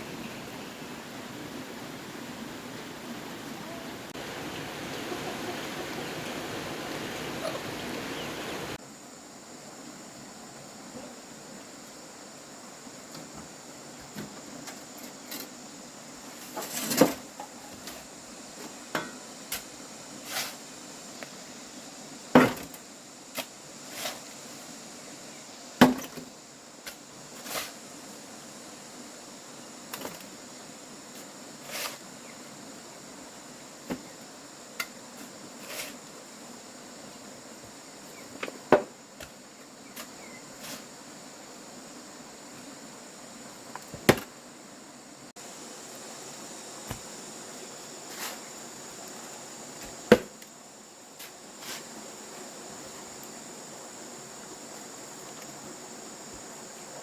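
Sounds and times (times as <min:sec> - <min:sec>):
knocks and thuds on wood: 0:25.8 - 0:26.3, 0:38.4 - 0:39.4, 0:43.9 - 0:44.3, 0:49.8 - 0:50.4.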